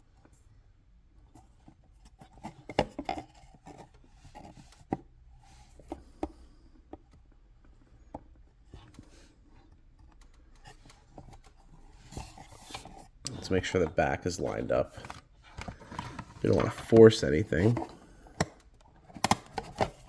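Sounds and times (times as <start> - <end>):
plastic parts clicking and knocking: 5.7 - 20.0
faint rubbing and scraping: 10.7 - 18.3.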